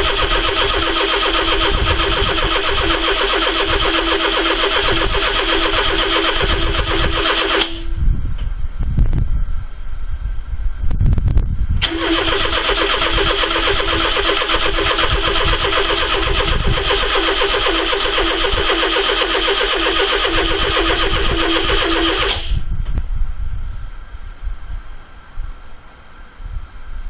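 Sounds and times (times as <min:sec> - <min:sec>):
starter motor cranking engine: 0:00.0 - 0:07.9, 0:11.8 - 0:22.5.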